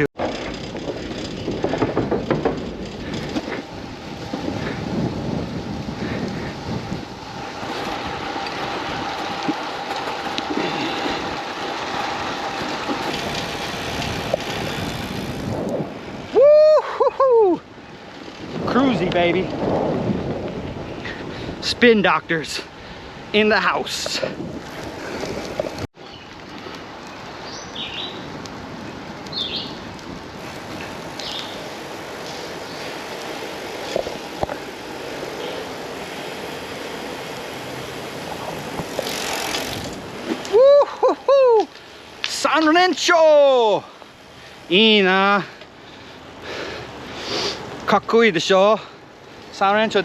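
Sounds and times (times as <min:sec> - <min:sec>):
bike tyres rolling on road: 0:00.0 - 0:50.0
steady outdoor noise: 0:00.0 - 0:50.0
wind rushing over microphone: 0:00.7 - 0:25.9.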